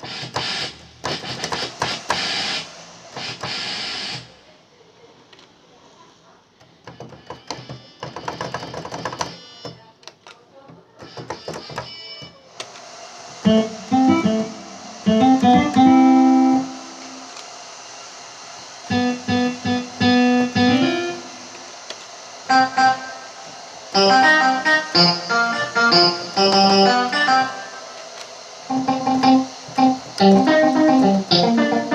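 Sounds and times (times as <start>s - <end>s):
steady hiss: 12.6s - 31.9s
synthesizer keyboard notes: 13.5s - 17.3s, 18.9s - 21.7s, 22.5s - 28.0s, 28.7s - 31.9s.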